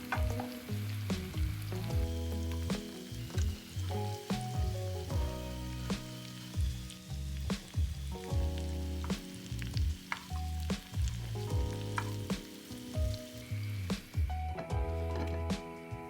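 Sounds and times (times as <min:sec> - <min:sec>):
food sizzling in a frying pan: 0:00.0 - 0:14.4
background music with low notes: 0:00.0 - 0:16.0
utensil clicking on pan: 0:11.9 - 0:12.7.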